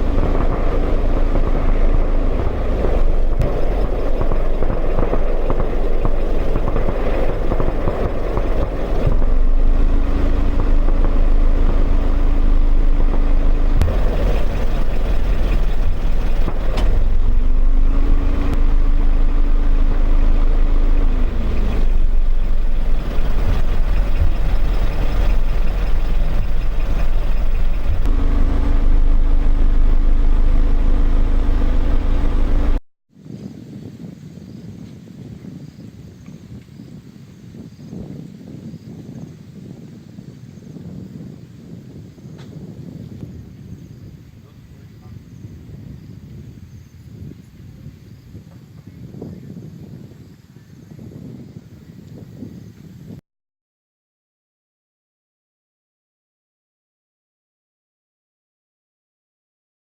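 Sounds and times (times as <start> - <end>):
vehicle engine hum: 0.0 - 32.8
wind rumble on microphone: 0.0 - 53.2.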